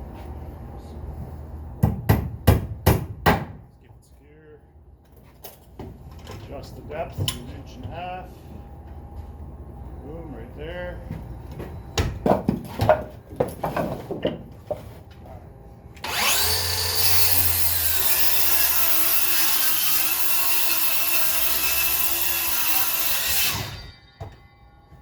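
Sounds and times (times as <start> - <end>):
circular saw cutting wood: 16.0 - 25.0.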